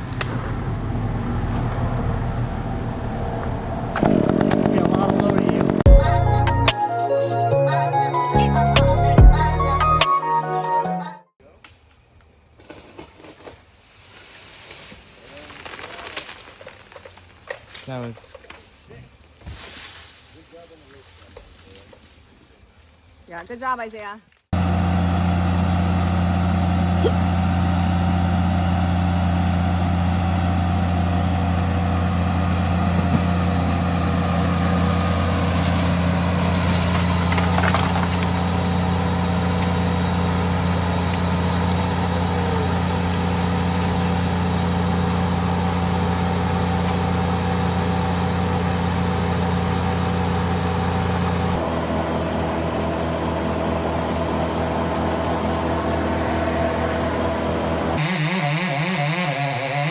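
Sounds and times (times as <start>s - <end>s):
engine idling: 24.6s - 59.9s.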